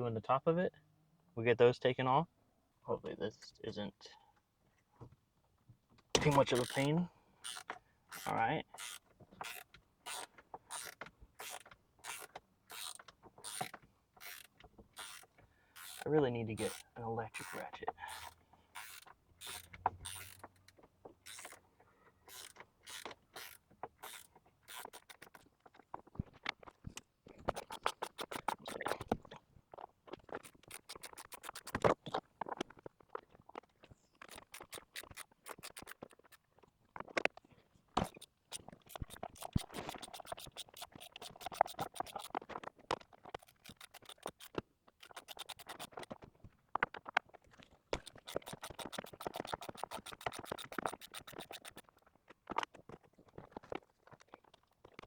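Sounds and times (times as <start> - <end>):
ratchet wrench clicking: 6.3 - 21.6, 22.3 - 25.4, 27.5 - 29.0, 30.4 - 31.8, 34.3 - 36.3, 38.0 - 42.4, 43.4 - 46.1, 48.0 - 51.8.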